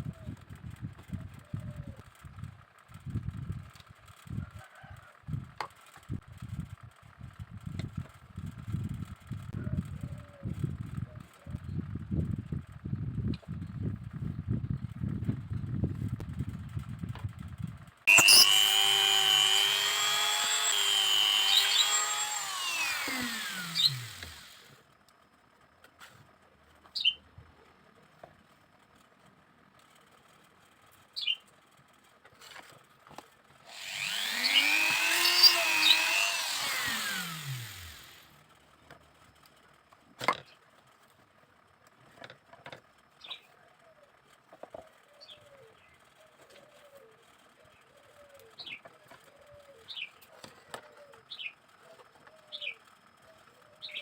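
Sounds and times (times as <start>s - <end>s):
small power tool motor: 18.1s - 24.8s, 33.7s - 38.4s.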